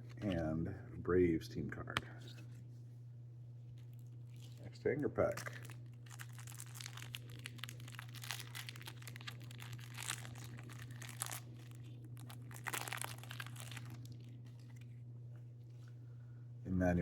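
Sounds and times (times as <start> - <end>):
low hum: 0.0 - 17.0
plastic wrapper tearing and crinkling: 3.8 - 15.0.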